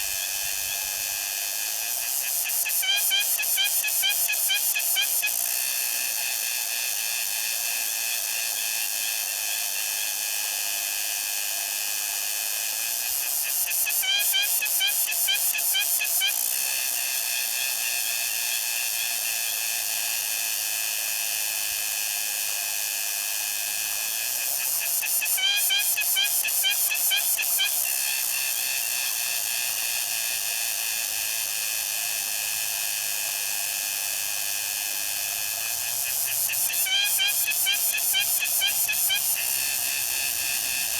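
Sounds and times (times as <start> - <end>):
cicada buzzing: 24.6 - 29.9, 34.0 - 40.9.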